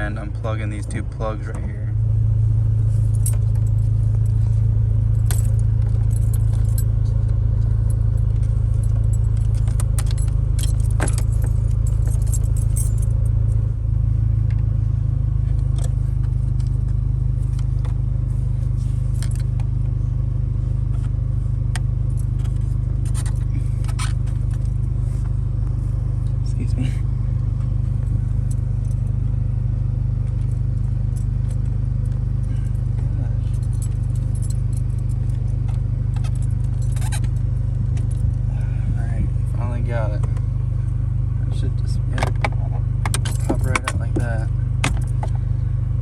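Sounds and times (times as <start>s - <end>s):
loud low hum: 0.0s - 46.0s
keys jangling: 5.1s - 7.0s, 7.9s - 13.3s, 22.0s - 25.2s, 30.2s - 38.4s, 43.1s - 44.0s.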